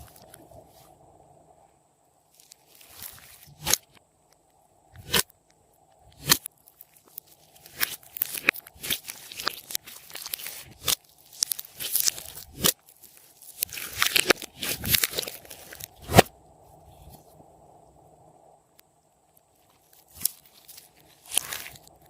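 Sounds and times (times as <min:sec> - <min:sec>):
slime crackling and popping: 0:06.1 - 0:16.3, 0:19.8 - 0:22.0.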